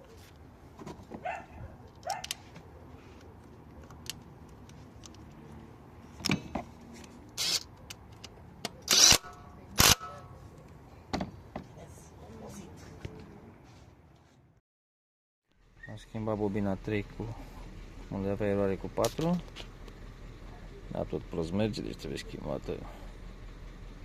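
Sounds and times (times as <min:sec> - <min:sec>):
clicks and clunks of engine parts: 0:06.1 - 0:11.7, 0:19.0 - 0:20.0.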